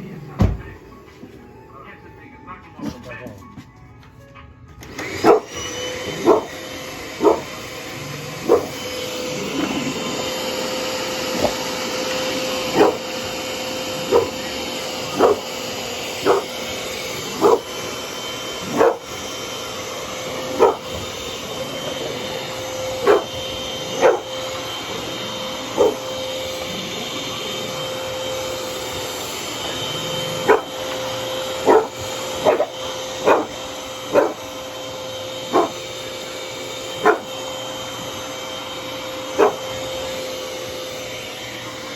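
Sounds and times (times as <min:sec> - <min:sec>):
vacuum cleaner whining: 0:00.0 - 0:03.3, 0:04.7 - 0:41.9
dog barking: 0:05.0 - 0:10.2, 0:11.0 - 0:27.8, 0:29.6 - 0:34.6, 0:35.4 - 0:36.0, 0:36.6 - 0:37.4, 0:39.2 - 0:40.1.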